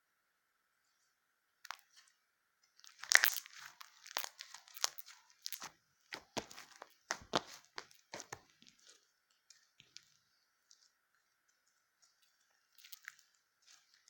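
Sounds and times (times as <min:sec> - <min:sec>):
slime crackling and popping: 0:02.8 - 0:14.0.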